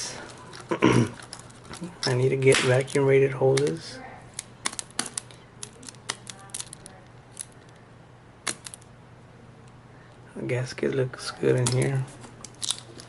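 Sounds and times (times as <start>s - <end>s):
faint steady hum: 0.0s - 13.0s
small hard objects clicking: 0.5s - 7.8s, 8.4s - 8.9s, 11.6s - 13.0s.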